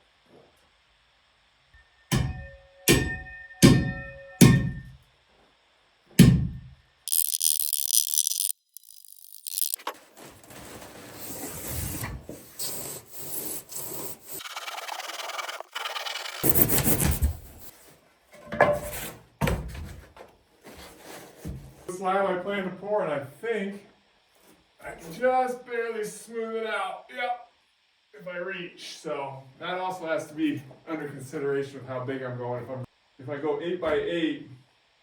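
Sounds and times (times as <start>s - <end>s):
tool scraping wood: 10.8s - 17.7s.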